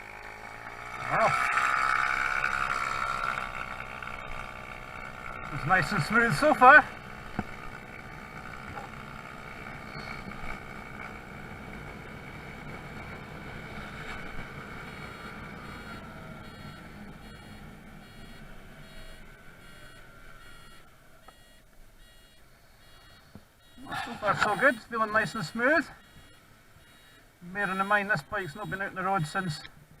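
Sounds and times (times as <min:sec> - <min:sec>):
scooter engine running: 0:00.0 - 0:29.6
faint beeping: 0:13.7 - 0:29.8.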